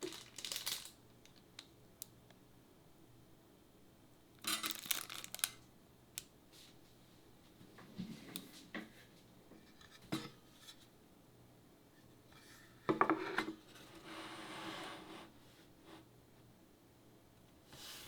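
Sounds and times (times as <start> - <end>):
metal parts clattering rattle: 0.0 - 0.9.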